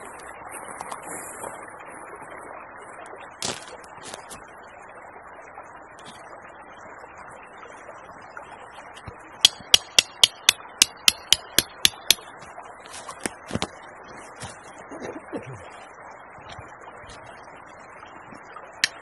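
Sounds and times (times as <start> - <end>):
sharp ringing knocks: 9.4 - 12.2.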